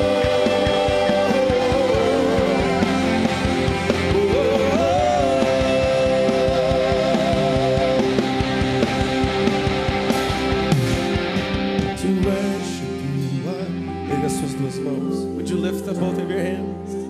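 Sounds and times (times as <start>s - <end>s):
live band playing held chords: 0.0s - 17.0s.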